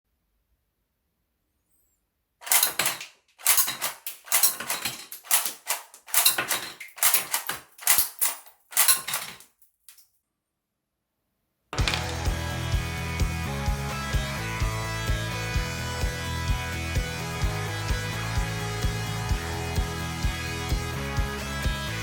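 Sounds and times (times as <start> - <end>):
plastic toy gun clicking: 2.4 - 9.3.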